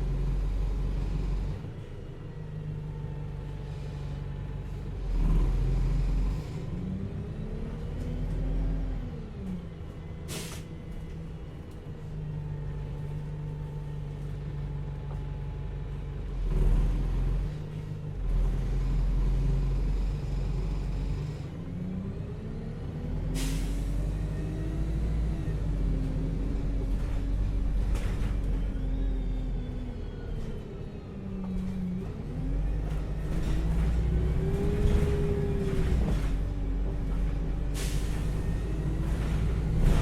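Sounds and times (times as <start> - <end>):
bus engine droning: 0.0 - 40.0
air brake hisses: 10.3 - 10.7, 23.4 - 24.0, 37.8 - 38.3.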